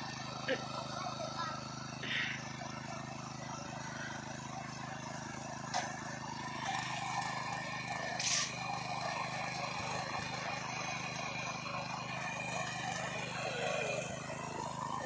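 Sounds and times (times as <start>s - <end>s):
engine running steadily: 0.0s - 15.0s
short burst of hissing: 8.2s - 8.5s.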